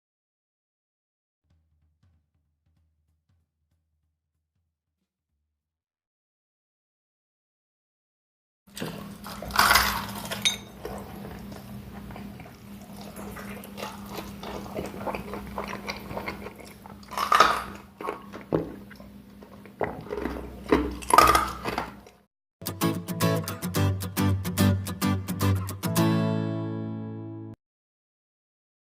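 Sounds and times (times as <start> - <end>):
chewing: 8.8 - 22.2.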